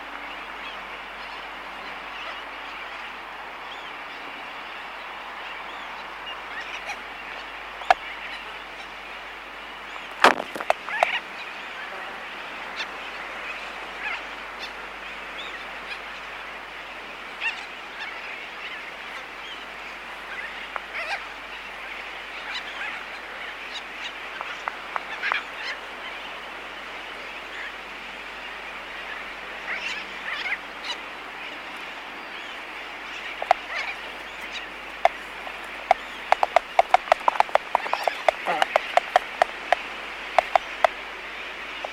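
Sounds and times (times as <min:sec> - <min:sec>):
albatross bill clicks: 0:10.2 - 0:10.8, 0:35.0 - 0:41.0
distant tern colony chatter: 0:17.4 - 0:41.9.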